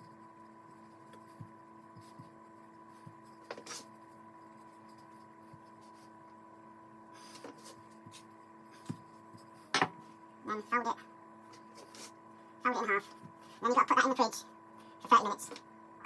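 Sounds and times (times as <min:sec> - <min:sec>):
dough brushing on work surface: 0:00.0 - 0:06.3, 0:07.2 - 0:09.7
steady low hum: 0:00.0 - 0:16.0.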